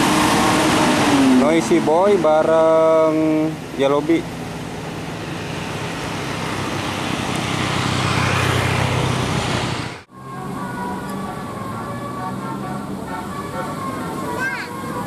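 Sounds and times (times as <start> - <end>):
bus passing close: 0.0 - 15.0
multi-tone bus horn tune: 10.1 - 15.0.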